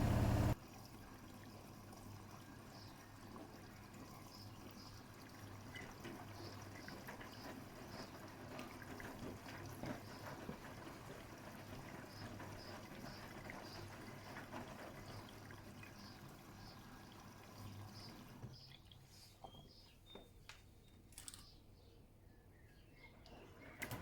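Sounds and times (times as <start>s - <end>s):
low machine hum: 0.0s - 0.6s
water sloshing in washing machine: 0.0s - 19.7s.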